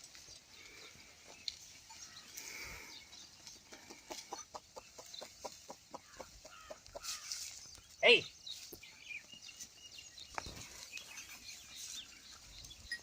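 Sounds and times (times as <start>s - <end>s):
chicken clucking: 3.5s - 7.6s
faint bird chirps: 6.0s - 13.0s.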